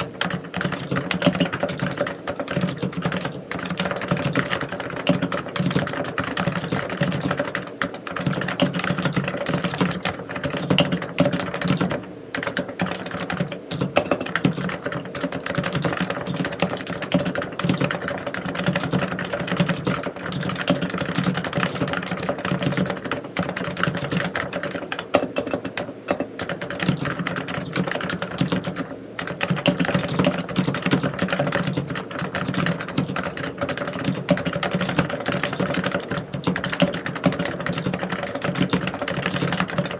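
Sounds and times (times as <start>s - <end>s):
keyboard typing: 0.0s - 39.9s.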